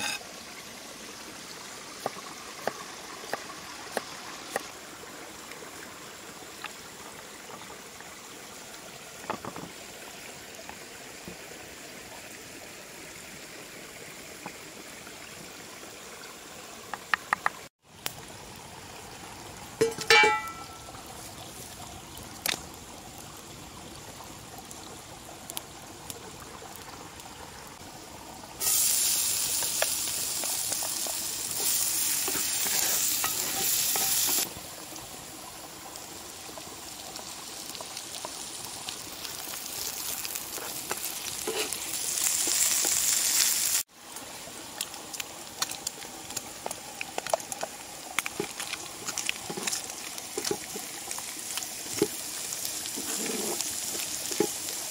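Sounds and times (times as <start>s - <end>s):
food sizzling in a pan: 0.0s - 0.3s, 28.6s - 35.7s, 36.8s - 43.9s, 47.2s - 54.9s
small crackles: 37.0s - 54.9s.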